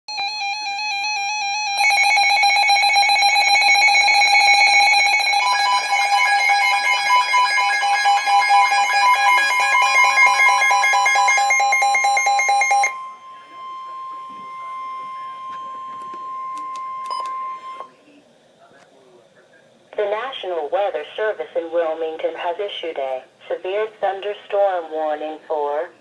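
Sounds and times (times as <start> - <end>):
higher alarm tone: 0.1 - 18.0
warbling electronic alarm tone: 0.1 - 18.0.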